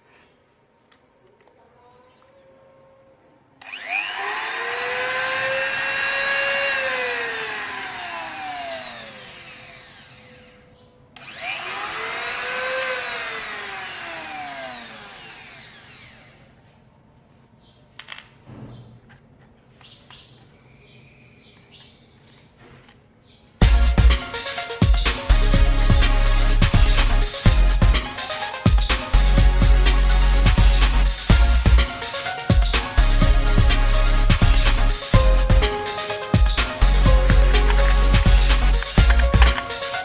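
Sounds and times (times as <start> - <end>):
mini grinder motor whining: 3.6 - 16.6, 36.2 - 40.0.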